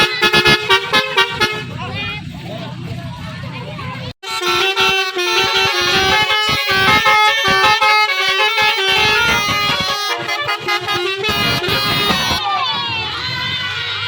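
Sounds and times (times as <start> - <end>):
multi-tone bus air horn melody: 0.0 - 2.0, 4.2 - 12.4.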